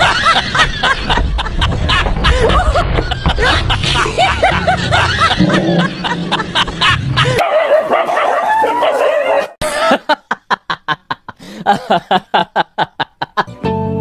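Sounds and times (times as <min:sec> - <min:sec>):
dog barking: 0:07.3 - 0:09.6.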